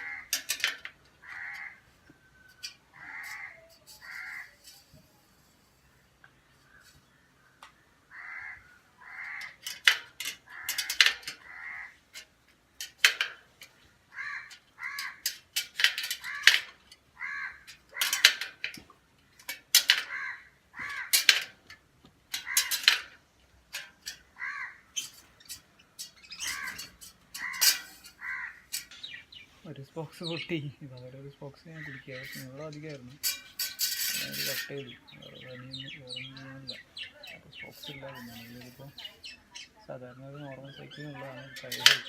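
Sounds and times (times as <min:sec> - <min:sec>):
crows cawing: 0:00.0 - 0:04.8, 0:06.6 - 0:12.3, 0:14.0 - 0:18.8, 0:19.4 - 0:21.7, 0:22.3 - 0:25.2, 0:26.0 - 0:29.2, 0:31.6 - 0:32.7.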